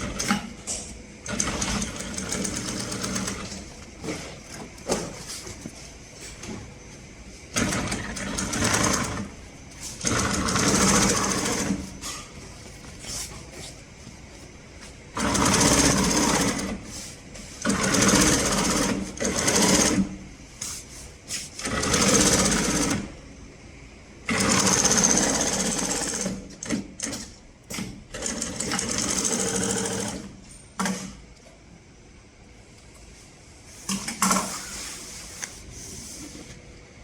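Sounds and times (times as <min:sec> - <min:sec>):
industrial sewing machine stitching: 0:00.0 - 0:05.1, 0:07.5 - 0:09.4, 0:10.0 - 0:12.0, 0:15.1 - 0:16.8, 0:17.6 - 0:20.2, 0:21.6 - 0:23.2, 0:24.3 - 0:31.0.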